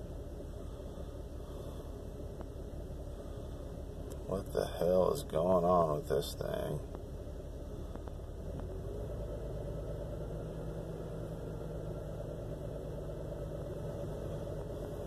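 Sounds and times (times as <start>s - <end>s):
car engine idling roughly: 0.0s - 8.4s.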